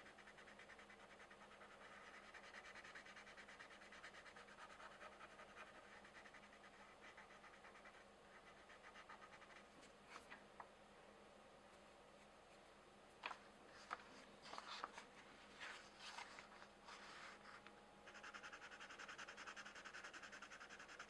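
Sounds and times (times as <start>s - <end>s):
coloured pencil scribbling on paper: 0.0s - 9.7s, 18.1s - 21.0s.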